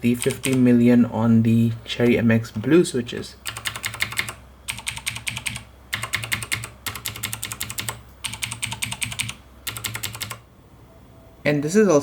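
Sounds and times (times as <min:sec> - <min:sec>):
typing on mechanical keyboard: 0:00.2 - 0:00.6, 0:03.4 - 0:10.4.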